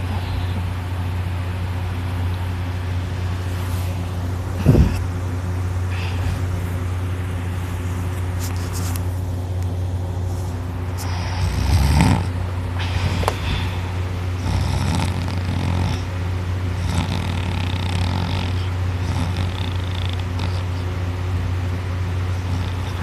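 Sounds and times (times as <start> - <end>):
steady low hum: 0.0 - 23.0
person snoring heavily: 4.5 - 5.1, 11.0 - 16.1, 16.7 - 20.8, 22.3 - 23.0.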